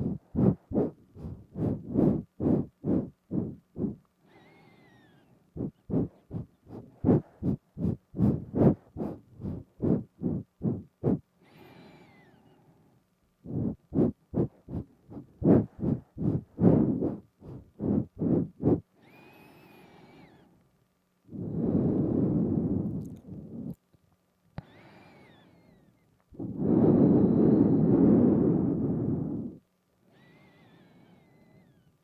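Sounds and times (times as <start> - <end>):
rapid nasal sniffing: 0.0 - 12.8, 13.4 - 20.5, 26.4 - 31.5
slow nasal breath with whistle: 0.0 - 20.5, 21.3 - 23.7, 24.6 - 31.9
long loud breath: 1.2 - 6.1, 11.4 - 14.1, 15.5 - 20.5, 24.6 - 31.8.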